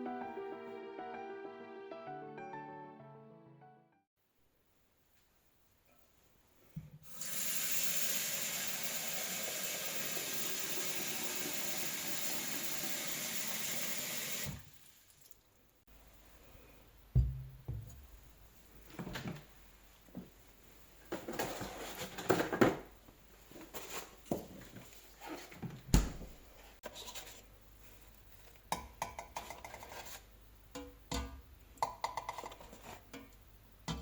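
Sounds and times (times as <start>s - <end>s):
kitchen tap running: 7.0s - 15.4s.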